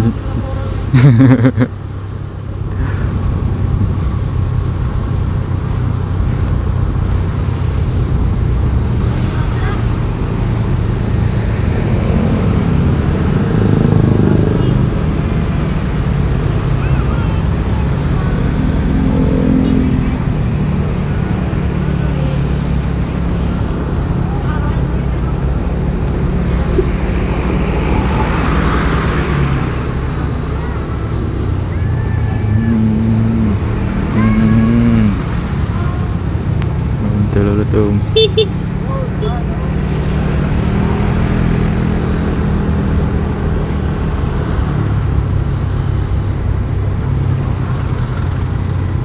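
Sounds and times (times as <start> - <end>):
motorcycle engine and road noise: 0.0 - 49.0.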